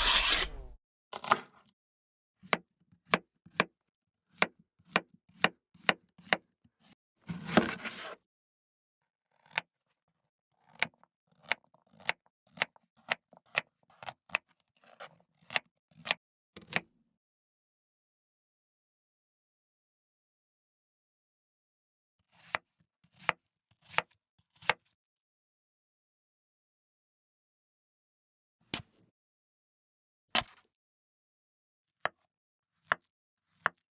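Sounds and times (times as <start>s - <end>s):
kitchen knife chopping: 0.0s - 1.4s
knife slicing scrape: 0.0s - 1.4s.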